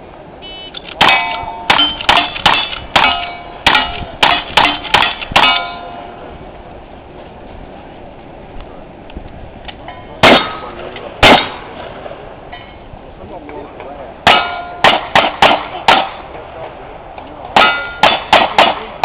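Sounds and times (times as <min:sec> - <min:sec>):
ringing steel targets: 0:00.8 - 0:06.3, 0:09.8 - 0:11.8, 0:12.5 - 0:12.8, 0:14.2 - 0:16.3, 0:17.6 - 0:19.0
gunshots: 0:01.0 - 0:05.7, 0:10.2 - 0:11.7, 0:14.3 - 0:16.2, 0:17.6 - 0:19.0.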